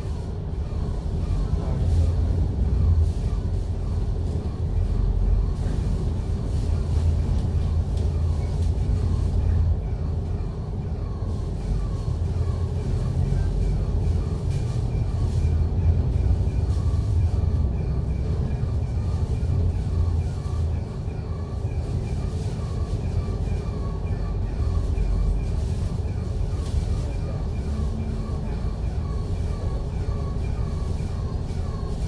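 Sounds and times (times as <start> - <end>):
bus engine and road rumble: 0.0 - 32.0.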